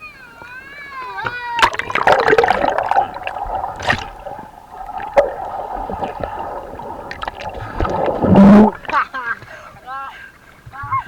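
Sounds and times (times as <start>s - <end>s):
river water gurgling and splashing: 1.5s - 9.1s.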